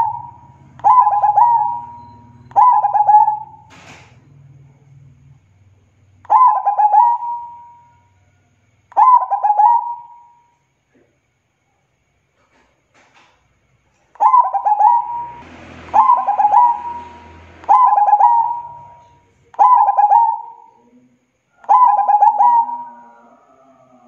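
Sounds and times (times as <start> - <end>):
dove cooing: 0.0 - 3.9, 6.3 - 7.8, 9.0 - 10.3, 14.2 - 20.9, 21.6 - 24.0.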